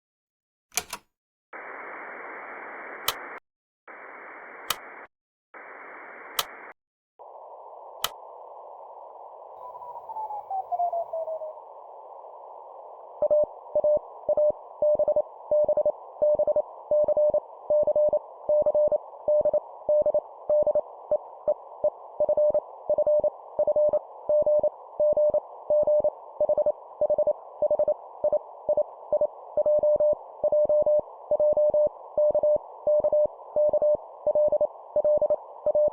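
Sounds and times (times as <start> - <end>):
sharp clicks: 0.7 - 1.1, 4.6 - 5.1, 6.3 - 6.8
radio hiss: 1.6 - 10.4.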